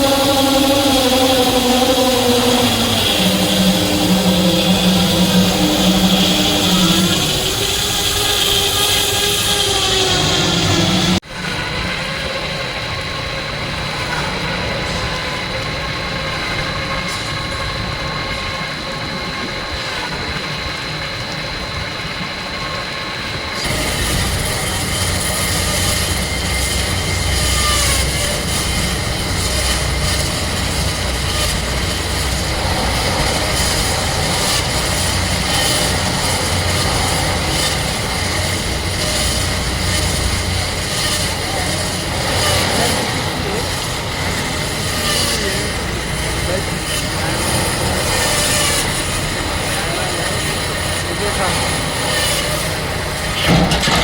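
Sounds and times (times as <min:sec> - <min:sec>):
wire saw cutting concrete: 0:00.0 - 0:12.8, 0:23.6 - 0:54.0.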